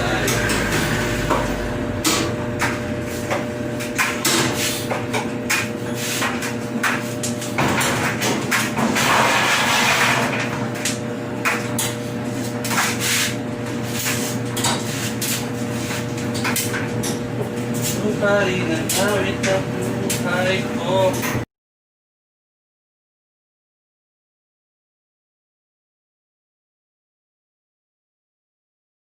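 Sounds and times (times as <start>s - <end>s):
steady hum: 0.0s - 21.5s.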